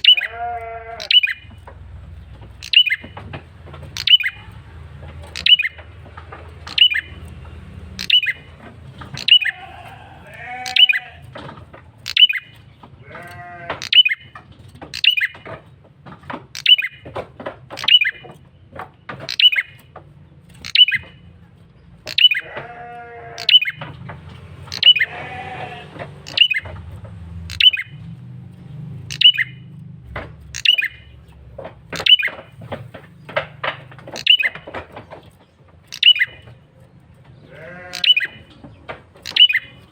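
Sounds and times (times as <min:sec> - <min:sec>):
bird wavering bleat-like calls: 0:00.0 - 0:01.6, 0:09.1 - 0:11.4, 0:12.0 - 0:14.3, 0:22.1 - 0:23.8, 0:24.7 - 0:26.6, 0:37.3 - 0:38.6
bird chip notes: 0:00.0 - 0:03.2, 0:03.8 - 0:11.3, 0:12.0 - 0:15.4, 0:16.6 - 0:17.0, 0:17.8 - 0:18.4, 0:19.2 - 0:21.4, 0:22.0 - 0:22.5, 0:23.2 - 0:23.9, 0:24.6 - 0:25.6, 0:26.2 - 0:26.8, 0:27.4 - 0:32.6, 0:34.2 - 0:34.7, 0:35.8 - 0:37.0, 0:37.6 - 0:38.6, 0:39.2 - 0:39.9.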